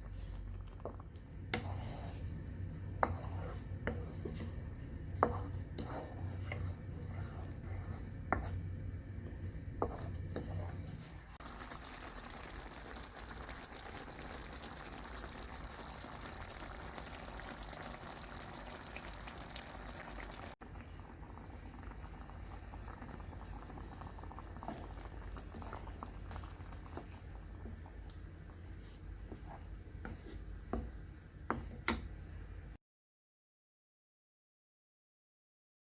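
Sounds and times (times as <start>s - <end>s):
meatballs sizzling in a pan: 11.4s - 20.6s, 21.4s - 28.0s.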